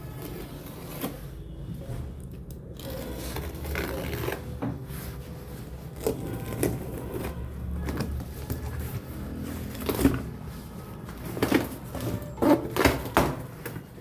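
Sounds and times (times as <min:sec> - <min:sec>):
packaging rustling: 0:02.8 - 0:14.0.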